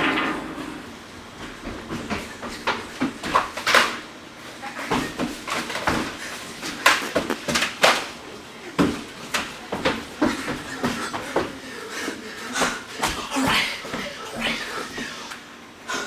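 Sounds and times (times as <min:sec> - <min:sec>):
knocks and scuffs: 0:06.8 - 0:07.5.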